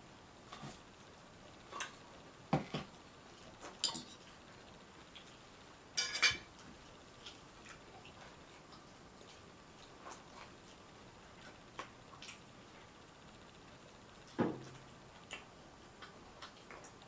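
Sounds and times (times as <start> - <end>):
tableware knocking and clinking: 3.8 - 4.2, 6.0 - 6.5.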